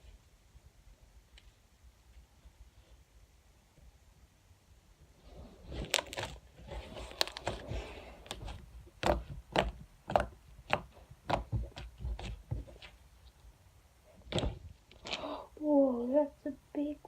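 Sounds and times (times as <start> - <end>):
soft slime squishing: 5.7 - 15.4
slime popping and squelching: 5.8 - 12.9.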